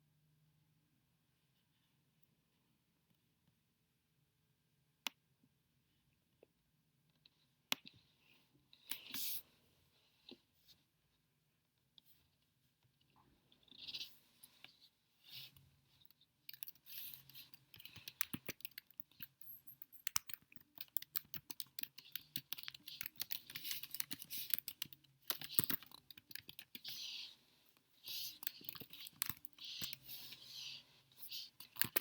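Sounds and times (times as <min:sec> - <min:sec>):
keyboard typing: 0:16.5 - 0:27.2, 0:28.0 - 0:32.0.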